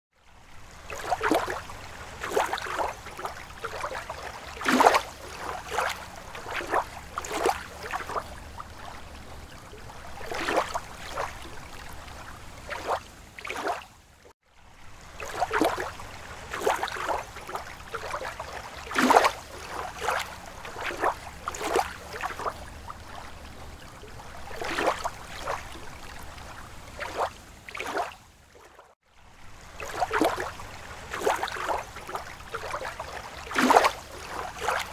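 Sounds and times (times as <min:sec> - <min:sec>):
water rippling and splashing: 0:00.1 - 0:34.9.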